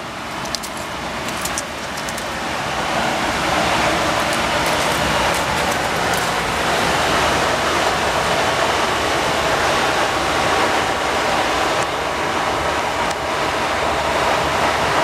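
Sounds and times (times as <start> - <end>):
loud rushing outdoor noise: 0.0 - 15.0.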